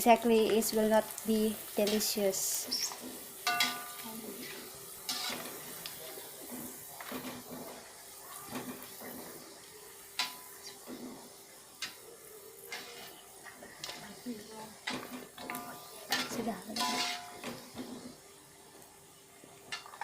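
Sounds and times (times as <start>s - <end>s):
frying oil hiss: 0.0s - 20.0s
metal spoon scraping a frying pan: 3.4s - 5.8s, 12.6s - 13.2s, 14.8s - 18.2s.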